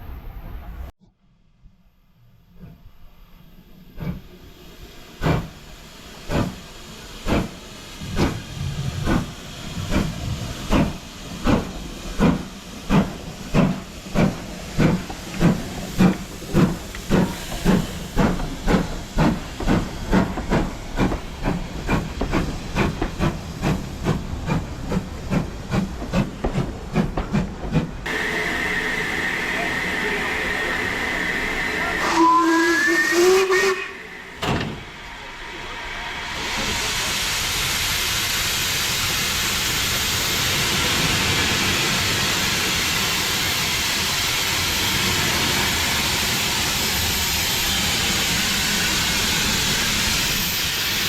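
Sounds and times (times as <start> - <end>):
steam locomotive chuffing: 2.6 - 51.0
steam hissing: 3.1 - 51.0.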